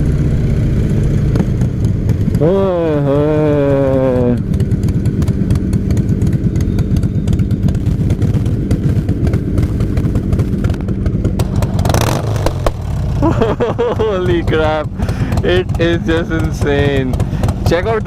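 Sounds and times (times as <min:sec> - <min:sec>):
motorcycle exhaust running: 0:00.0 - 0:18.0
sharp crack: 0:07.6 - 0:13.2.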